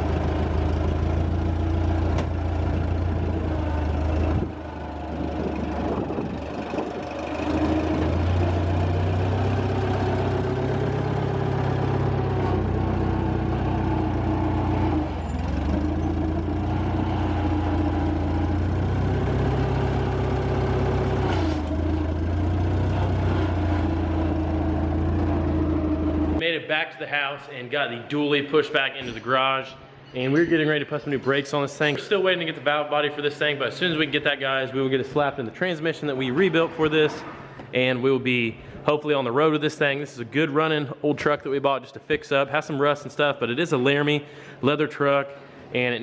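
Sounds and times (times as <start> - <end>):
vehicle engine running: 0.0 - 26.4.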